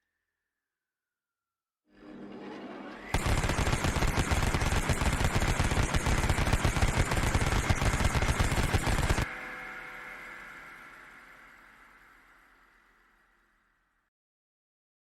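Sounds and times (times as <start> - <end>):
machine gun burst: 3.1 - 9.3
gunfire echo: 3.2 - 9.3.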